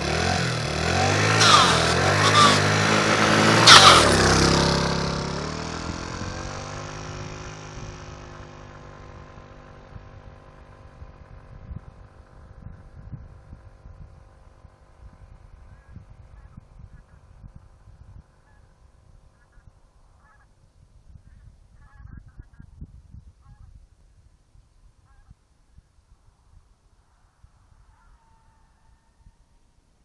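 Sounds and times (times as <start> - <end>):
vehicle brakes squealing: 1.0 - 5.2.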